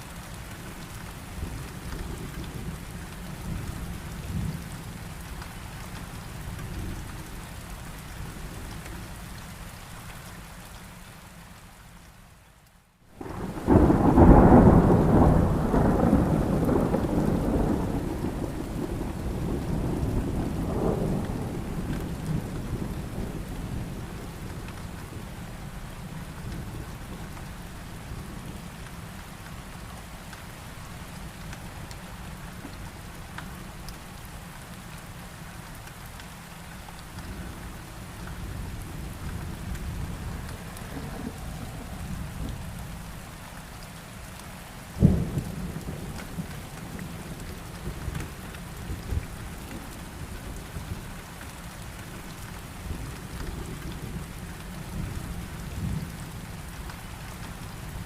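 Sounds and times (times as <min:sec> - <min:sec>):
rain: 0:00.0 - 0:58.0
thunder rumbling: 0:13.2 - 0:25.7, 0:37.2 - 0:43.2.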